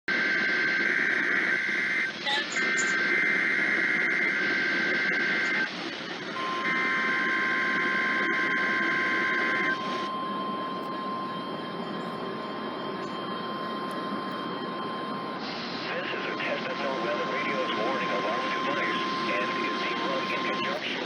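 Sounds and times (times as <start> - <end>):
radio static: 0.1 - 21.0
digital data warble: 2.2 - 3.3.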